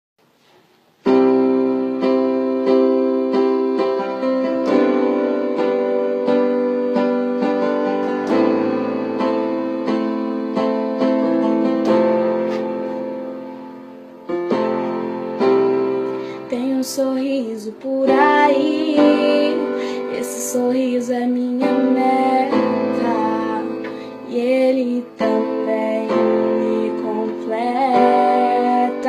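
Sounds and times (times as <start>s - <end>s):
piano playing chords: 1.0s - 29.0s.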